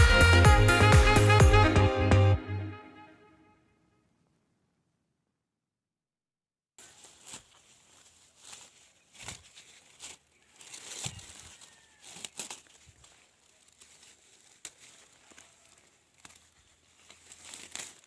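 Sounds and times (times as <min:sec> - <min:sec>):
dry corn leaves rustling: 0:06.8 - 0:18.0.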